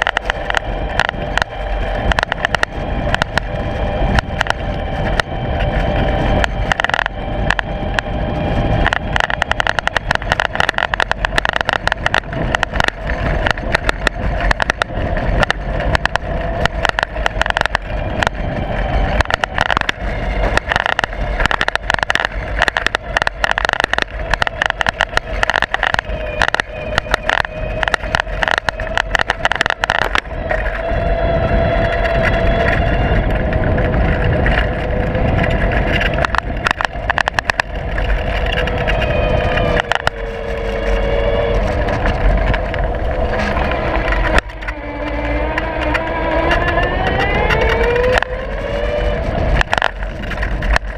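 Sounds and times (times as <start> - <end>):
camera mount rattling and knocking: 0.0 - 3.6, 6.4 - 8.1, 8.8 - 18.4, 19.0 - 30.8, 34.1 - 40.9, 49.6 - 50.9
ride whine and rumble: 0.0 - 50.9.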